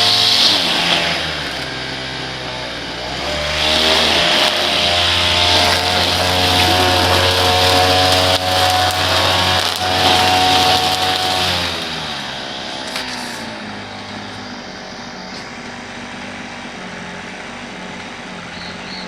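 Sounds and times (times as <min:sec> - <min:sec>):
small petrol engine running: 0:00.0 - 0:19.0.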